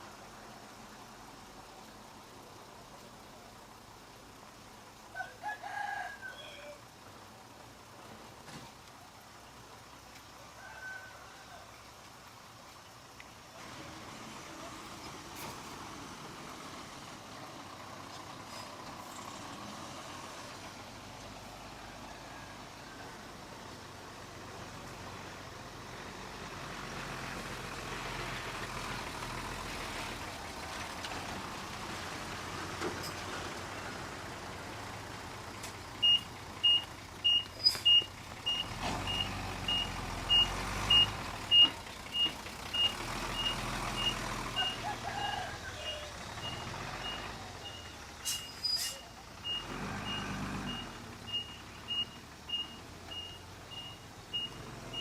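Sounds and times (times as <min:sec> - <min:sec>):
heavy machine engine rumbling: 0:13.6 - 0:55.0
reversing alarm beeps: 0:36.0 - 0:44.8, 0:45.9 - 0:48.6, 0:49.4 - 0:55.0.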